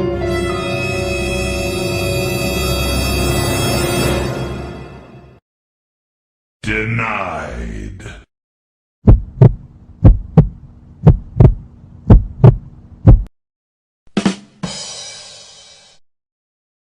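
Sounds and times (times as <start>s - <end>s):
heartbeat thumps: 9.0s - 13.3s.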